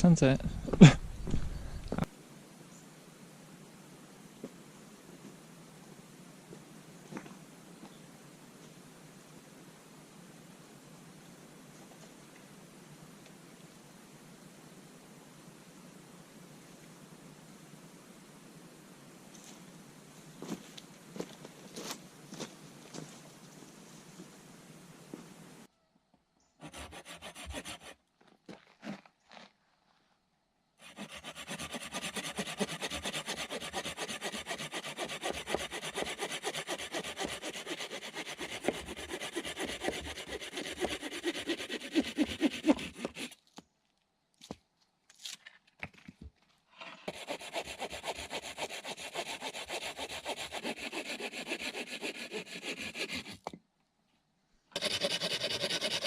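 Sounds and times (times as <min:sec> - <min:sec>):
hand saw cutting branch: 0:26.6 - 0:28.0, 0:30.8 - 0:43.4, 0:47.0 - 0:53.4, 0:54.8 - 0:56.0.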